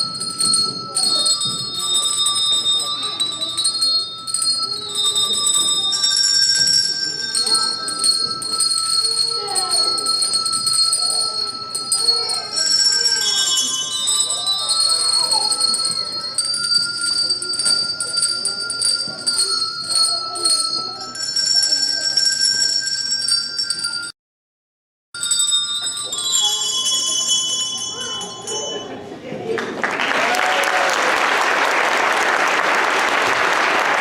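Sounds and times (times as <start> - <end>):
tuned bells ringing melody: 0.0 - 24.1, 25.2 - 29.1
children's voices: 0.1 - 16.7, 26.1 - 29.6.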